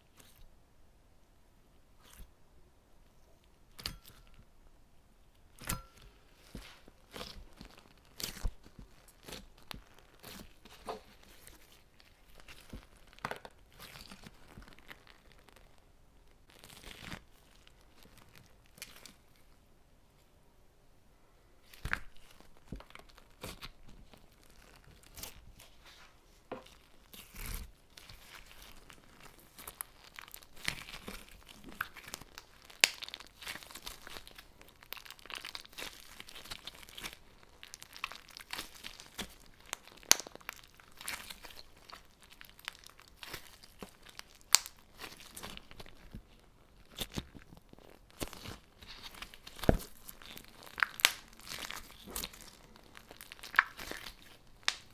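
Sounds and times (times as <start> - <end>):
crunchy slime crackling: 5.4 - 19.6, 21.6 - 54.9.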